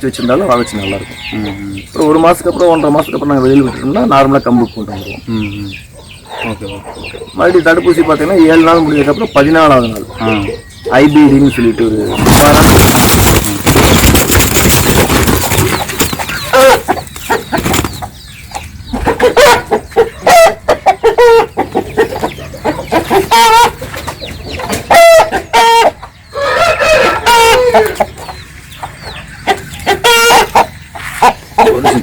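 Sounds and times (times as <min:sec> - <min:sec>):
chickens clucking: 0:00.0 - 0:32.0
rooster crowing: 0:00.5 - 0:01.7, 0:25.0 - 0:28.0.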